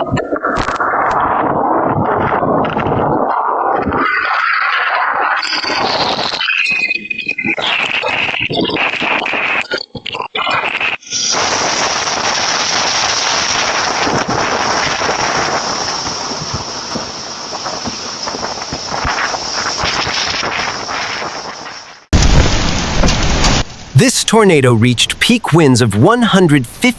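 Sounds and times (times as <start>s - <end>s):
storm wind on microphone: 0.0s - 24.0s
crackles and pops: 0.0s - 25.6s.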